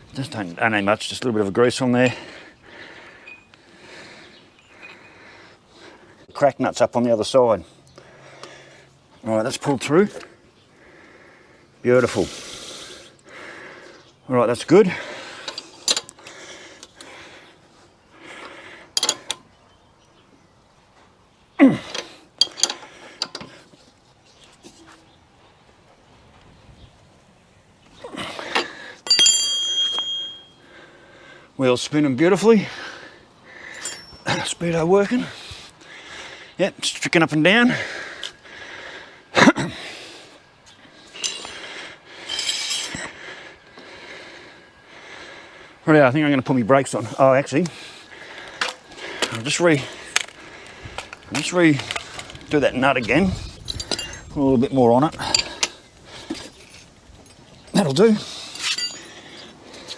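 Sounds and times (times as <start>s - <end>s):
metallic clinks of tools: 29.0s - 30.6s, 33.7s - 34.5s, 41.1s - 41.6s, 42.2s - 43.2s, 53.6s - 54.3s, 58.5s - 59.5s.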